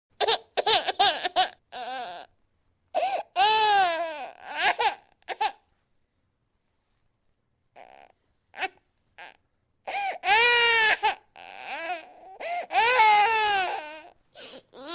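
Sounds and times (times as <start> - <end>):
child crying and sobbing: 8.6 - 14.9.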